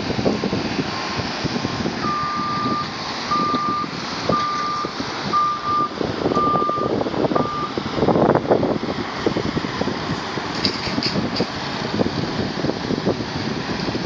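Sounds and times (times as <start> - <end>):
construction site rumble: 0.0 - 14.0
reversing alarm beeps: 2.0 - 7.7.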